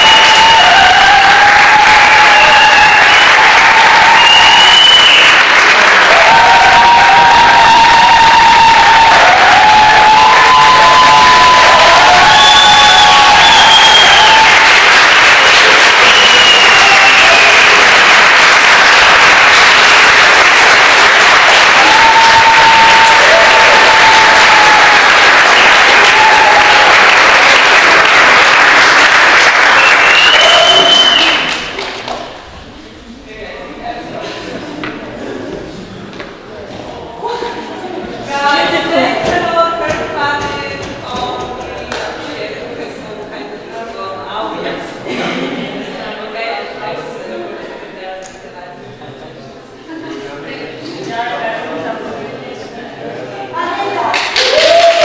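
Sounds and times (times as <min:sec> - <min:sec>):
audience applauding: 0:00.0 - 0:32.7, 0:53.8 - 0:55.0
people cheering: 0:00.0 - 0:33.0, 0:53.6 - 0:55.0.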